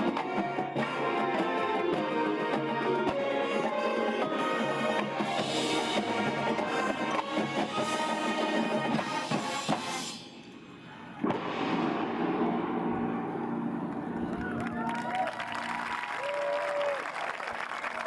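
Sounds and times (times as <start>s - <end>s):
marching band playing: 0.0s - 10.2s.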